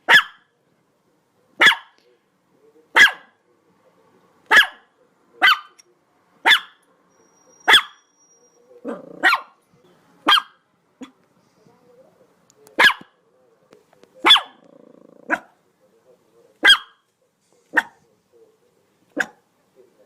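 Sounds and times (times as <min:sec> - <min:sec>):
dog barking: 0:00.0 - 0:00.5, 0:01.6 - 0:02.0, 0:02.9 - 0:03.4, 0:04.5 - 0:05.8, 0:06.4 - 0:06.8, 0:07.6 - 0:08.1, 0:08.8 - 0:09.6, 0:10.2 - 0:11.2, 0:12.8 - 0:13.2, 0:14.2 - 0:14.7, 0:15.3 - 0:15.6, 0:16.6 - 0:17.1, 0:17.7 - 0:18.0, 0:19.1 - 0:19.5
low rough dog sound: 0:08.5 - 0:09.8, 0:14.2 - 0:15.7, 0:17.4 - 0:18.2.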